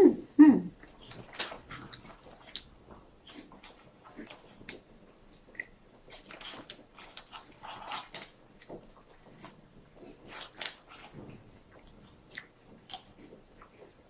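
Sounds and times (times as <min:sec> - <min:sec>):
person eating with wet smacks: 0:00.7 - 0:14.0.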